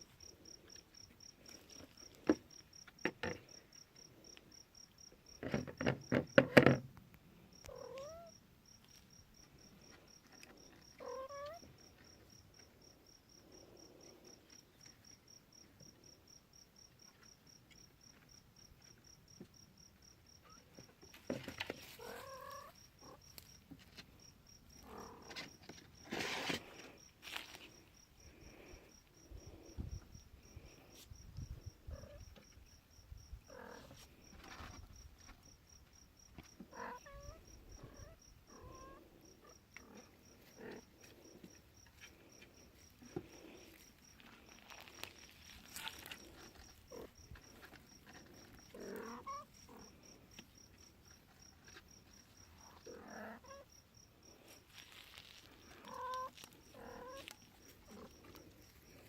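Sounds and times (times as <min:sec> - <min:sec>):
kittens mewing: 0:07.7 - 0:08.3, 0:48.7 - 0:49.9, 0:55.7 - 0:58.5.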